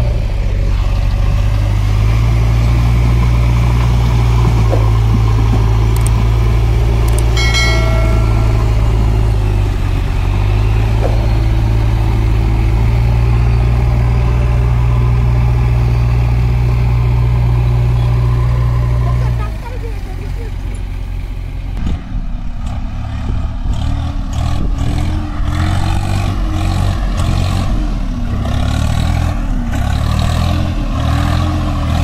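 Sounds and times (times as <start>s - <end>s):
heavy diesel engine running: 0.0s - 32.0s
high ringing tone: 7.2s - 12.8s.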